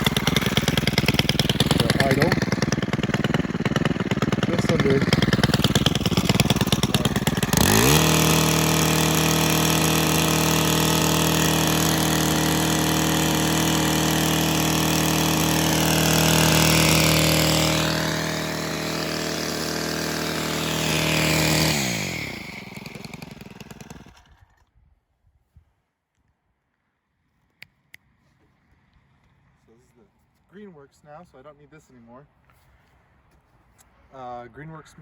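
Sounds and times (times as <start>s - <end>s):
line trimmer engine: 0.0s - 24.7s.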